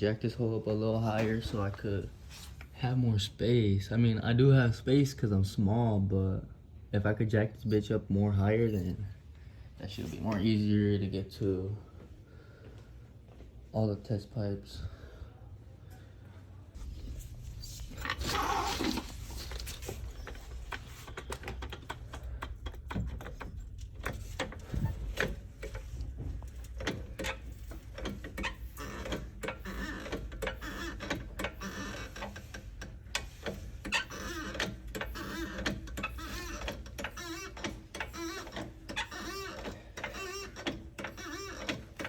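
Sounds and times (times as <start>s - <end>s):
steady low hum: 4.7s - 29.5s.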